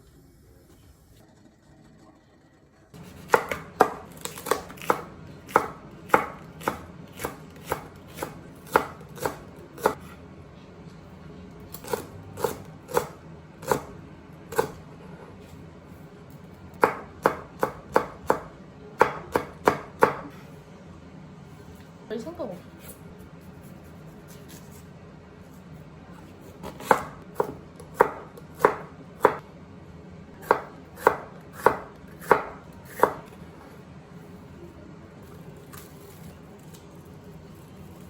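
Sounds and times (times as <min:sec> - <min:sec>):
knife chopping on cutting board: 0:03.0 - 0:10.1, 0:16.8 - 0:20.3, 0:26.6 - 0:29.4, 0:30.4 - 0:33.4.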